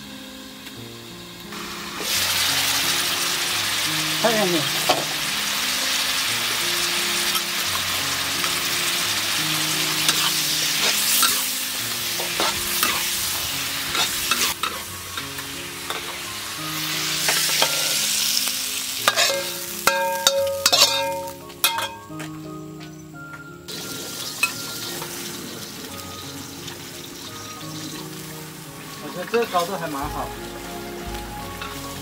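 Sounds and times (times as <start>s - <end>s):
food sizzling in a pan: 0.0s - 22.2s, 23.7s - 32.0s
spatula scraping a pan: 10.0s - 11.5s, 12.1s - 16.3s, 19.0s - 21.3s.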